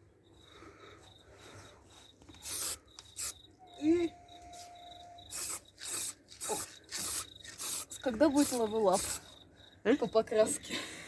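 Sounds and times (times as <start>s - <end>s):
faint high chirring: 0.0s - 10.7s
spray can hissing: 2.4s - 3.4s, 5.3s - 9.2s.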